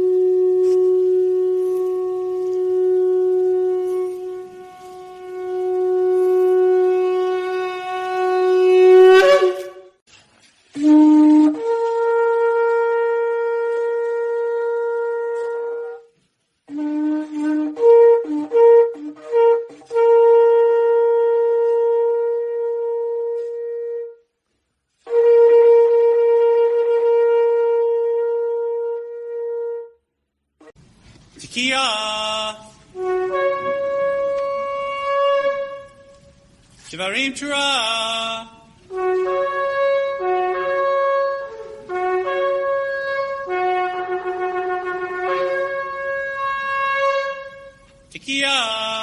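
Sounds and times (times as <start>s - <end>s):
ram's horn blasts: 0.0s - 10.0s, 10.7s - 24.3s, 25.0s - 30.0s, 32.4s - 36.6s, 38.7s - 49.0s.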